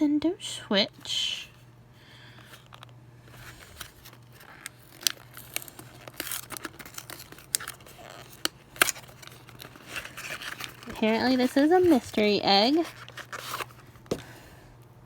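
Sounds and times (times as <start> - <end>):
packaging crinkling and rustling: 2.3 - 14.4
packaging tearing: 3.4 - 14.0.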